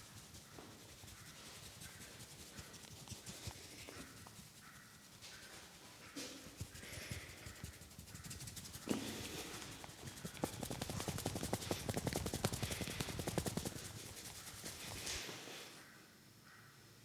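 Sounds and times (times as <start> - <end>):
hands patting head: 6.2 - 15.6.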